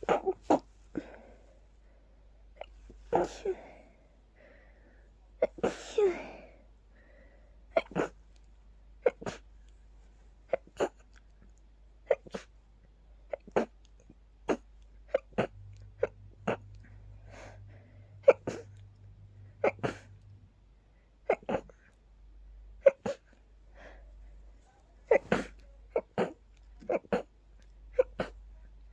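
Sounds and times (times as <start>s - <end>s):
person sneezing: 0.0s - 1.4s, 2.6s - 3.9s, 5.4s - 6.6s, 7.7s - 8.2s, 9.0s - 9.5s, 14.5s - 20.4s, 22.8s - 23.4s, 25.1s - 27.3s, 27.9s - 28.4s.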